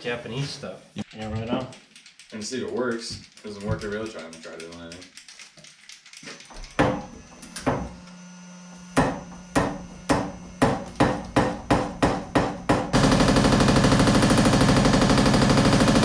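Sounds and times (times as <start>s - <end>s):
motor hum: 6.7s - 16.0s.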